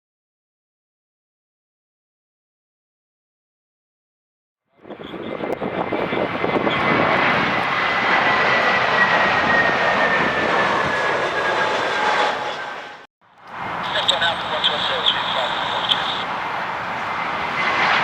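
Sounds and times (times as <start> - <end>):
jet airliner roaring past: 4.7 - 18.0.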